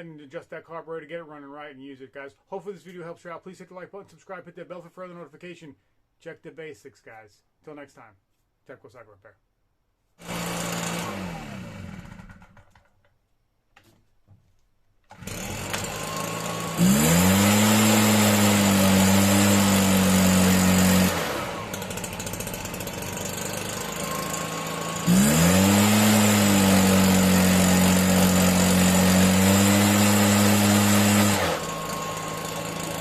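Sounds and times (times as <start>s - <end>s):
leaf blower engine revving: 10.2s - 12.7s, 15.1s - 33.0s.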